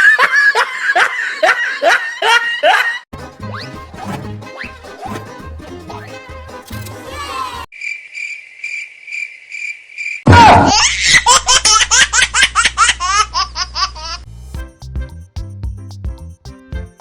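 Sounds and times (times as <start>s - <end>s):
loud laughter: 0.0s - 3.0s, 10.4s - 14.2s
cricket chirping: 7.7s - 10.3s.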